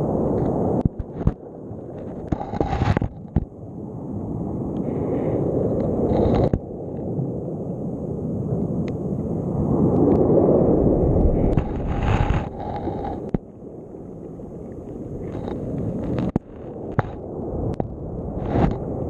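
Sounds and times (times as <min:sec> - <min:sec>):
muffled churning water underwater: 0:00.0 - 0:19.0
camera knocking on sea bed: 0:00.8 - 0:01.4, 0:02.2 - 0:03.5, 0:15.3 - 0:18.8.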